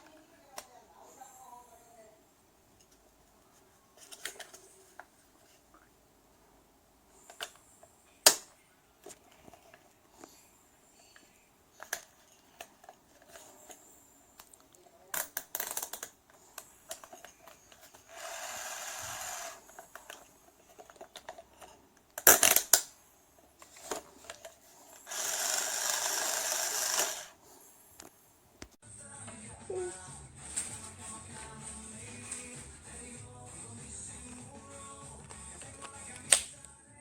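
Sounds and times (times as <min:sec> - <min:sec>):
plastic clicks and rattles: 0:14.4 - 0:16.2
toy electric screwdriver whirring: 0:18.0 - 0:19.8, 0:24.9 - 0:27.4.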